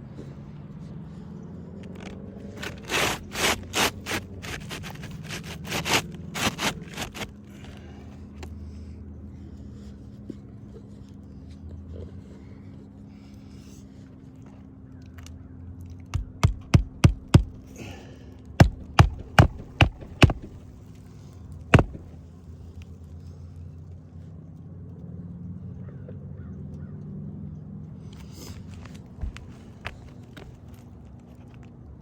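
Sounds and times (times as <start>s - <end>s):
hammer striking roof shingles: 2.0s - 7.3s, 16.1s - 17.8s, 18.6s - 20.7s, 21.8s - 22.2s, 28.8s - 30.7s.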